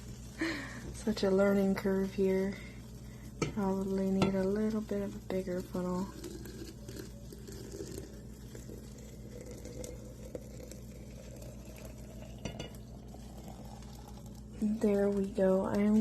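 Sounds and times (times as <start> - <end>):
steady low hum: 0.0 - 16.0
water trickling through funnel: 1.7 - 16.0.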